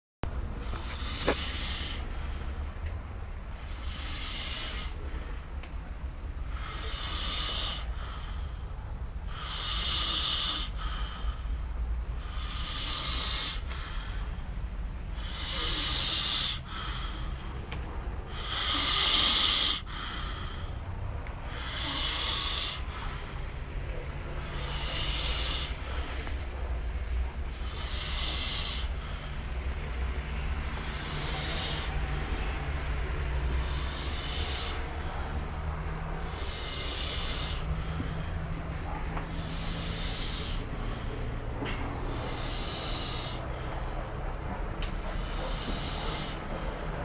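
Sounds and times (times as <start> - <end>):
man snoring loudly: 0.7 - 2.0, 3.6 - 5.0, 6.5 - 8.3, 9.3 - 11.2, 12.2 - 13.8, 15.2 - 17.3, 18.3 - 20.7, 21.4 - 23.3, 24.3 - 26.2, 27.5 - 29.2, 30.4 - 38.2, 39.3 - 41.1, 42.0 - 43.6, 45.1 - 46.6.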